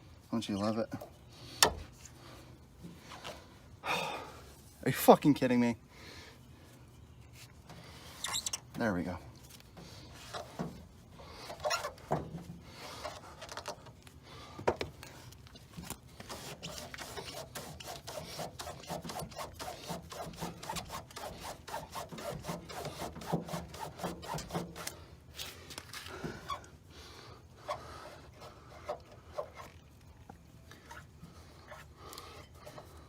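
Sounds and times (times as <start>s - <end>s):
cloth rubbing through metal hinge: 10.2s - 12.2s, 16.1s - 25.5s.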